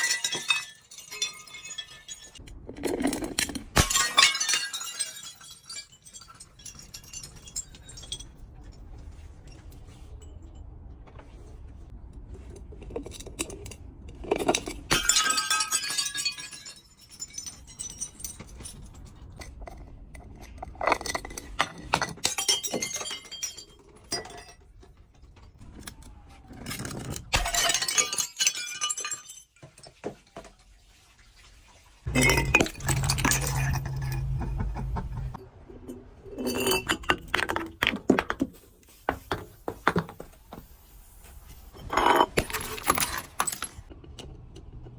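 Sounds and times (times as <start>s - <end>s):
glass breaking and crunching: 0.0s - 8.3s, 14.5s - 18.9s, 27.3s - 29.6s, 32.1s - 35.4s
low steady hum: 32.1s - 37.3s.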